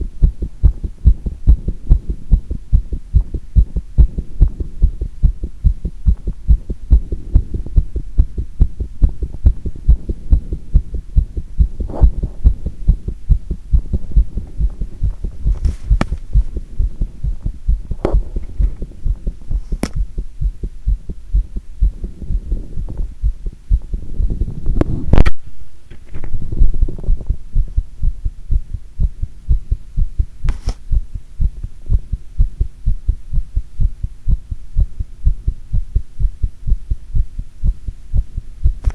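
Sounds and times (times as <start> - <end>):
heartbeat through microphone: 0.0 - 25.5, 26.1 - 38.9
sharp scratches or knocks: 14.7 - 16.6, 19.5 - 20.1, 30.5 - 30.9.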